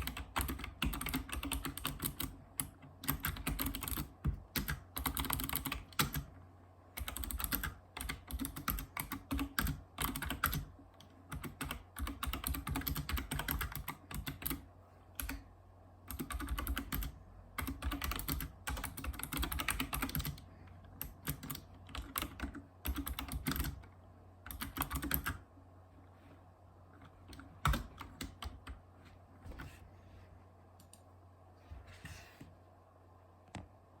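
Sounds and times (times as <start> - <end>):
keyboard typing clicks: 21.0 - 25.4.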